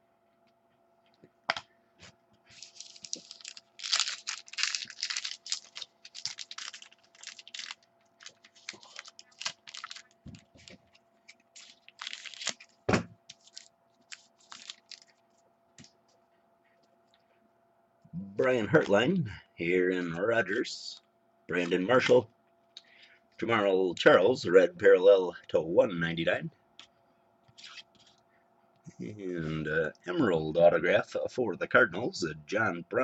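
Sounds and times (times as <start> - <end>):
wrapper crinkling and tearing: 2.5 - 10.2, 11.3 - 15.2.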